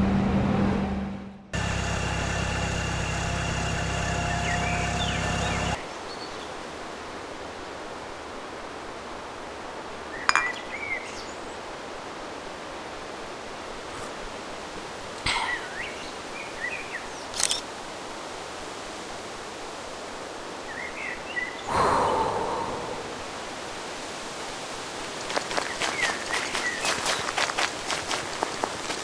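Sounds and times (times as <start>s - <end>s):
outdoor background noise: 0.0s - 29.0s
steady low hum: 1.6s - 5.8s
bird chirp: 4.0s - 6.5s.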